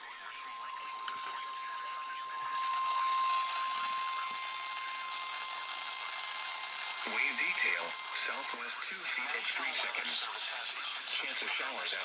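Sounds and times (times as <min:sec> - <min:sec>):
radio static hiss: 0:07.0 - 0:12.0.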